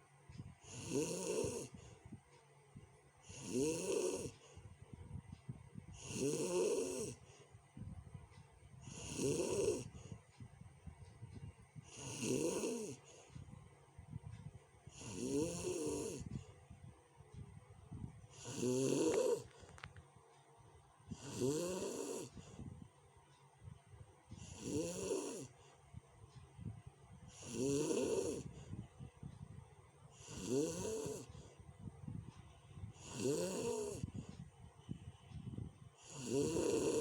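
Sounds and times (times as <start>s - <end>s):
quiet breathing: 0.0s - 37.0s
person snoring loudly: 0.6s - 1.8s, 3.3s - 4.4s, 6.0s - 7.2s, 8.8s - 10.0s, 11.9s - 13.1s, 14.9s - 16.4s, 18.3s - 19.8s, 21.1s - 22.6s, 24.3s - 25.5s, 27.3s - 28.6s, 30.2s - 31.4s, 32.9s - 34.2s, 36.0s - 37.0s.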